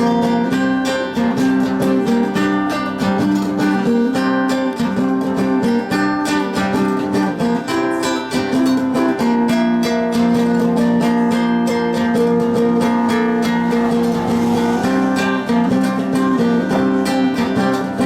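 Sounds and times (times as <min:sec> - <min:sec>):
acoustic guitars strumming: 0:00.0 - 0:18.0
held low guitar note: 0:12.2 - 0:17.8.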